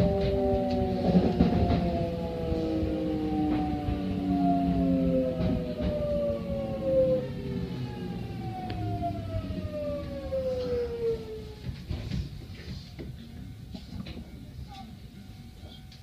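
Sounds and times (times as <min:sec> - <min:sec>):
low running rumble: 0:00.0 - 0:12.0
electric train motors whining: 0:00.0 - 0:12.4.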